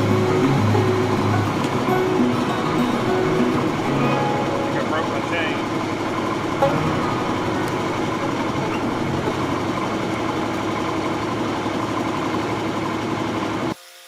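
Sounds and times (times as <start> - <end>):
excavator diesel engine running: 0.0 - 13.7.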